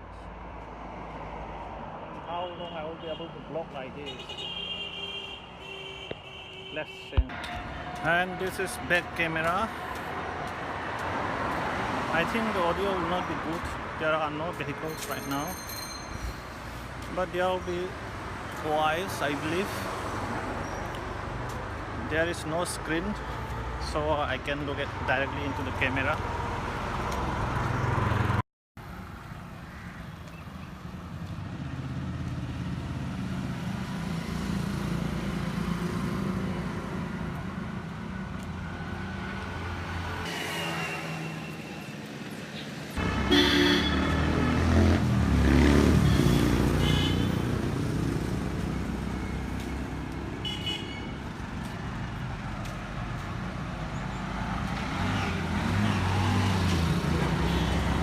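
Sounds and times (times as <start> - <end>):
road traffic passing: 0.0 - 58.0
vehicle horns honking: 4.0 - 9.2, 43.0 - 44.5, 45.9 - 47.6, 50.4 - 51.2, 57.4 - 58.0.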